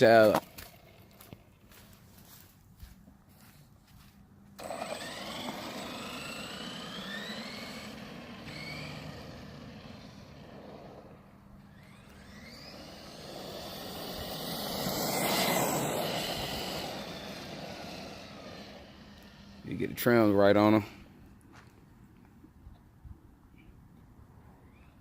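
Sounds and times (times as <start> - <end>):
electric motor whining: 4.6 - 20.4.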